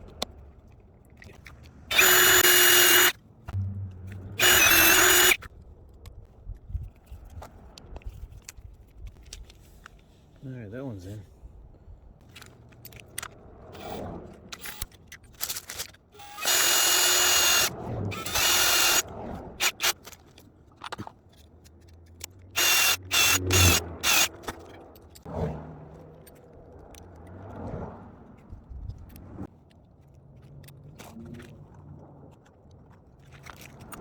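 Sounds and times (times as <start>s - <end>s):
power drill running: 1.9s - 3.1s, 4.4s - 5.4s, 13.8s - 14.0s, 14.6s - 14.9s, 16.2s - 20.0s, 22.6s - 24.3s.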